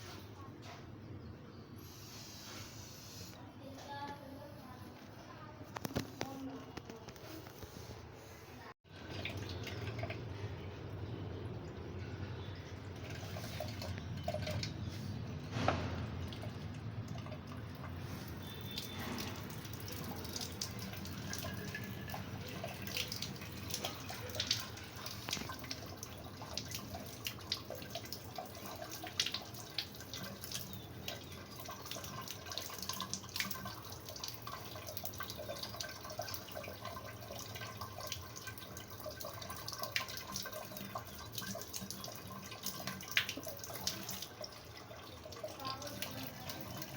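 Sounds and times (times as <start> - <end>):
small water drips: 8.9 - 46.9
water running from a tap: 8.9 - 46.9.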